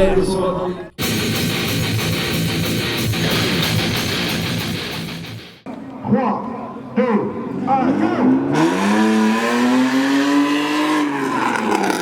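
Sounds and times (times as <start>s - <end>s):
distorted electric guitar music: 1.0s - 5.7s.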